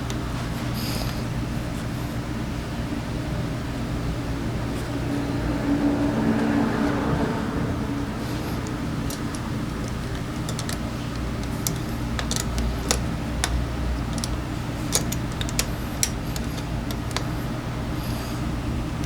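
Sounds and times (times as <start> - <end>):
scooter engine idling: 7.4 - 18.5
sharp clicks and taps: 8.6 - 17.4.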